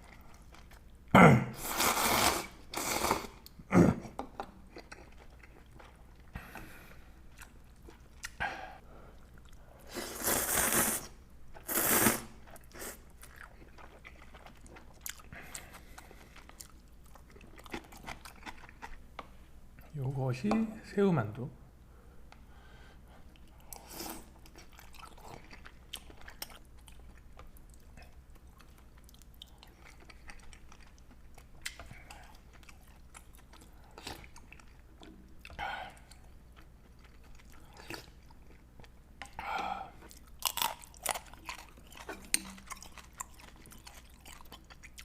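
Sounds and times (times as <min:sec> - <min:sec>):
chewing and biting mouth sounds: 0:04.6 - 0:06.7, 0:12.4 - 0:19.0, 0:23.3 - 0:45.0.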